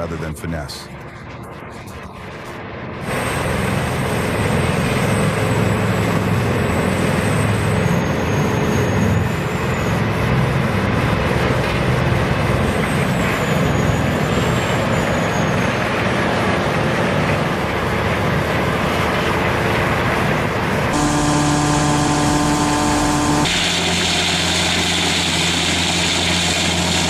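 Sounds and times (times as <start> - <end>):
deep engine drone: 0.0 - 27.0
high-pitched whine: 0.1 - 16.0, 20.4 - 27.0.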